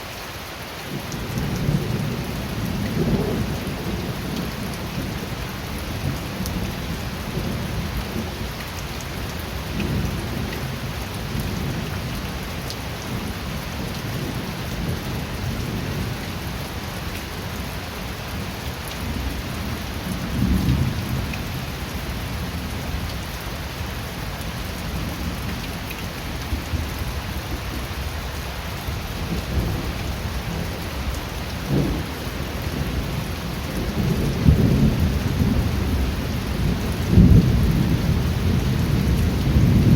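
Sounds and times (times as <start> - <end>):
steady rain falling: 0.0 - 39.9
low rolling thunder: 1.2 - 8.4, 19.0 - 23.0, 29.0 - 39.9.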